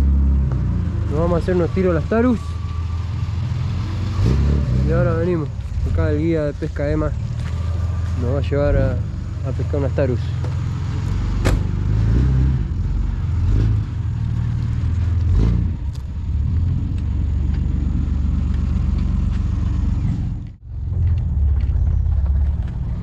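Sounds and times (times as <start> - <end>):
vehicle rumble on the move: 0.0 - 23.0.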